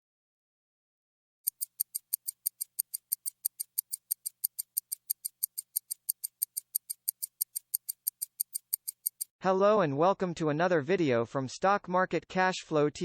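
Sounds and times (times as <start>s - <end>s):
clock-like ticking: 1.5s - 9.3s.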